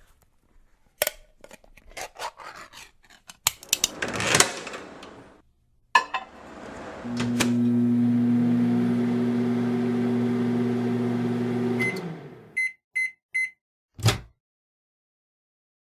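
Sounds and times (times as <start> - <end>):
microwave oven humming: 6.3 - 12.6
microwave click: 6.6 - 12.3
microwave beeps: 11.6 - 13.6.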